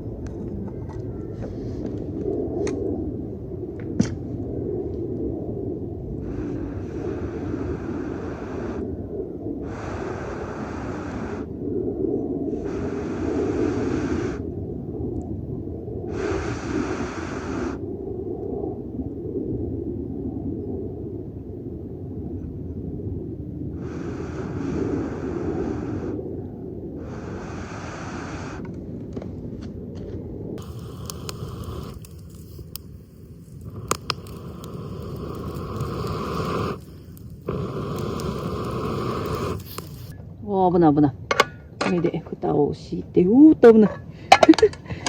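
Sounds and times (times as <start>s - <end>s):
person blowing into a fire: 6.2s - 8.9s, 9.6s - 11.6s, 12.5s - 14.6s, 16.1s - 17.9s, 23.8s - 26.2s, 27.0s - 28.7s, 30.6s - 40.2s
low rumble: 28.7s - 41.2s.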